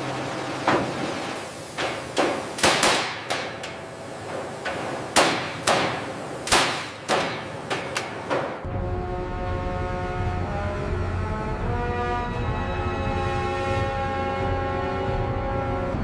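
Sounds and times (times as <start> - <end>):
hammer strikes: 1.8 - 8.7.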